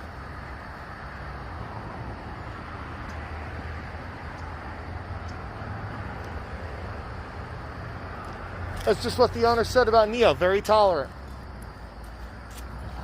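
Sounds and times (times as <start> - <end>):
outdoor rumble and hiss: 0.0 - 13.0
faint high ticks: 3.0 - 3.3, 4.3 - 4.6, 5.2 - 5.5, 6.2 - 6.4.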